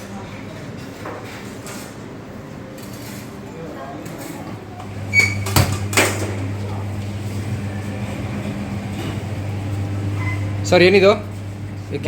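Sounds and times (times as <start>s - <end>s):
kitchen equipment electric hum: 4.6s - 12.0s.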